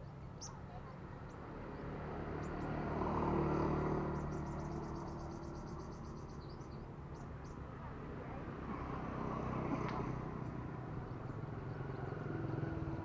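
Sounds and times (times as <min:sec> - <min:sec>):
passing motor vehicle: 0:01.0 - 0:13.0.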